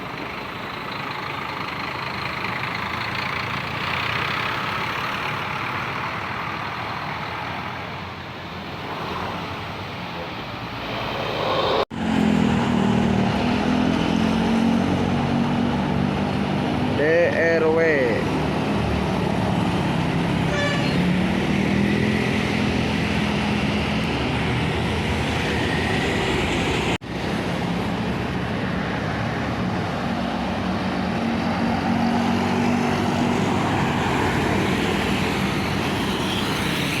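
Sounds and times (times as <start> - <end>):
large vehicle engine running: 0.0 - 7.6
road traffic: 0.0 - 37.0.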